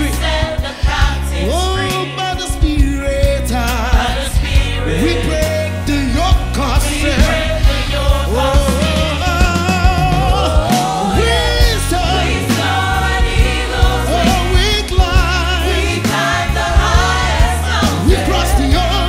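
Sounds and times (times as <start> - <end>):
bass: 0.0 - 19.0
gospel choir singing: 0.0 - 19.0
live band playing: 0.0 - 19.0
drum hits: 6.0 - 18.6.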